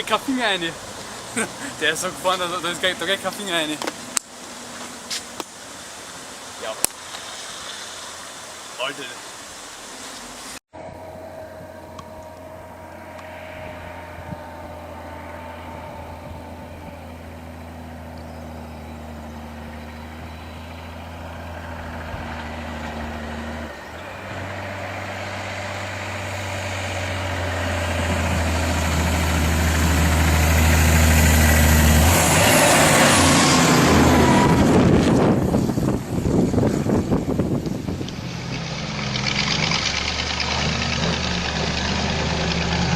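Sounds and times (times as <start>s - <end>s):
truck diesel engine running: 10.8s - 42.9s.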